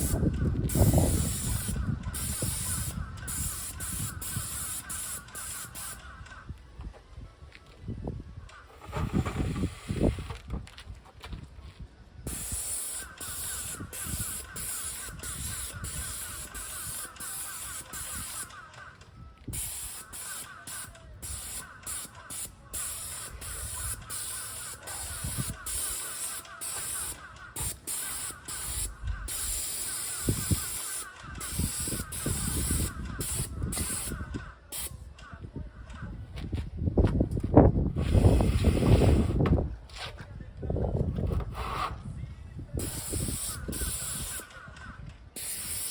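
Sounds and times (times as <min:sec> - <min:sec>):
paint spray gun hissing: 0:00.0 - 0:06.3, 0:08.8 - 0:10.3, 0:12.3 - 0:18.7, 0:19.6 - 0:34.9, 0:42.8 - 0:44.5, 0:45.4 - 0:45.9.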